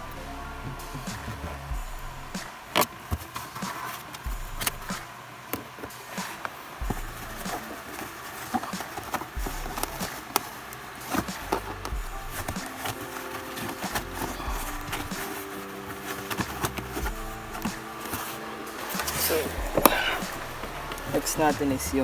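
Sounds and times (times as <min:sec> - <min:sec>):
low bass background music: 0:00.0 - 0:02.5, 0:04.3 - 0:05.1, 0:06.8 - 0:07.6, 0:09.4 - 0:10.1, 0:11.3 - 0:22.0
hands handling light strips: 0:02.4 - 0:22.0.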